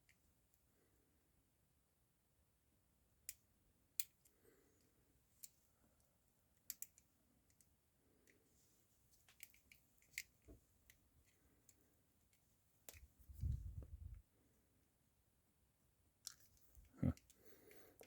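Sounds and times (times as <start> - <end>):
low rumble: 13.3 - 14.2.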